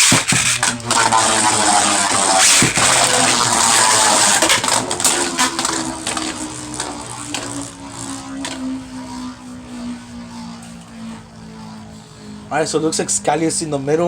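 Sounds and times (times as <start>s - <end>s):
spinning tops clattering together: 0.0s - 8.7s
spinning tops whirring: 0.0s - 14.0s.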